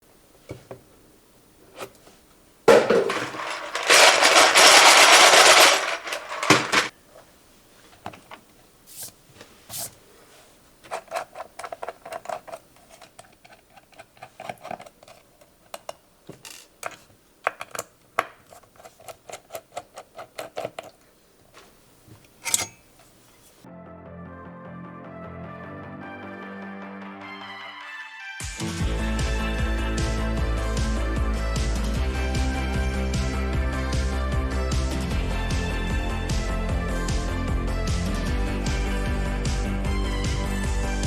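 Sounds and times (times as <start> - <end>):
loud rustling: 2.7 - 15.3
keyboard parts clicking: 3.1 - 6.9, 10.8 - 21.0.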